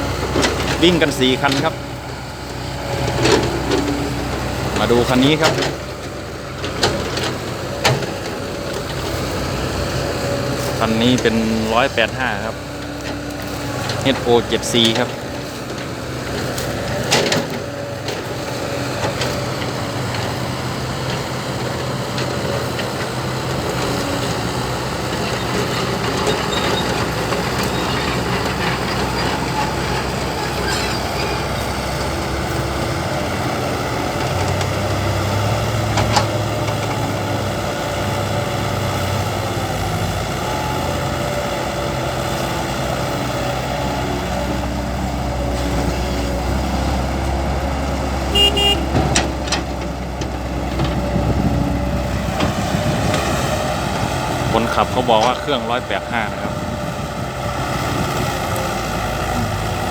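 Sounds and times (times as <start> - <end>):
heavy diesel engines running: 0.0 - 59.9.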